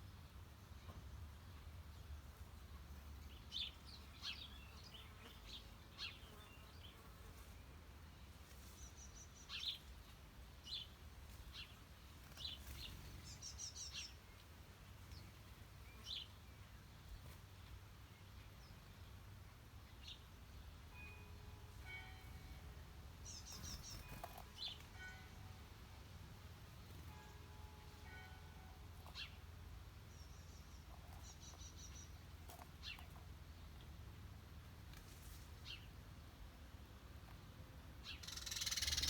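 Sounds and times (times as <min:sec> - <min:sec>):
small birds chirping: 0:08.2 - 0:19.2, 0:23.2 - 0:25.0, 0:29.0 - 0:34.0, 0:38.0 - 0:39.0.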